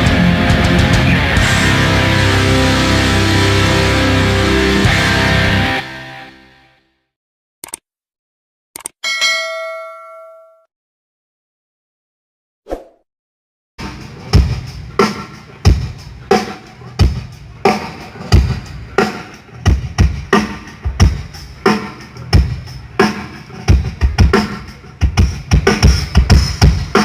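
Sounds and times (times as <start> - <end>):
drum kit beat: 0.0 - 5.9, 13.8 - 27.0.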